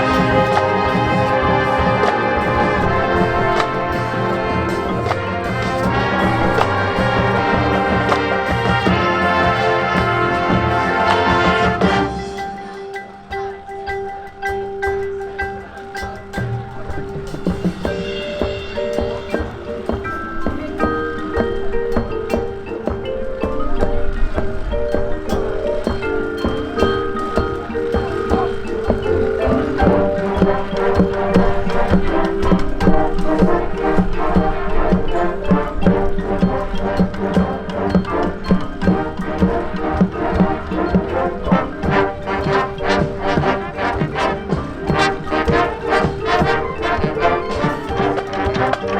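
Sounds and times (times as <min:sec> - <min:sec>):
mallet percussion: 0:00.0 - 0:48.9
marching band playing: 0:00.0 - 0:48.9
sustained wind instrument notes: 0:00.0 - 0:48.9.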